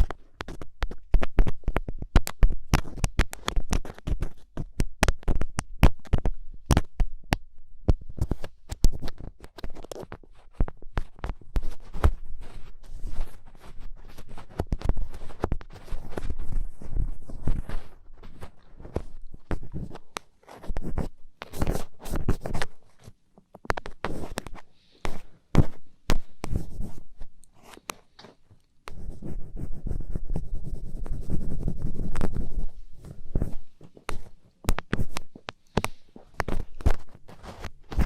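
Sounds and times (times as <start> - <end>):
ear pick scratching: 7.9 - 38.0
steady rubbing: 28.9 - 35.2.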